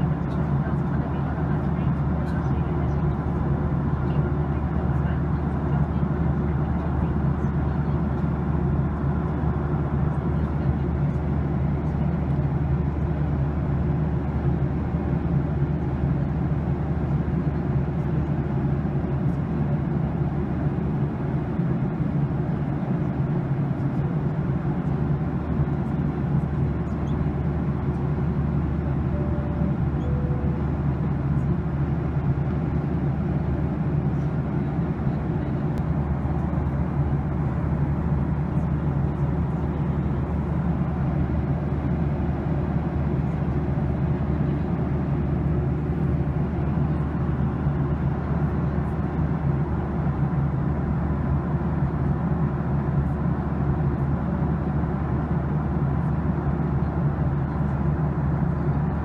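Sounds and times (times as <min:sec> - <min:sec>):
airplane cabin engine roar: 0:00.0 - 0:59.0
faint two-note chime: 0:29.2 - 0:30.6.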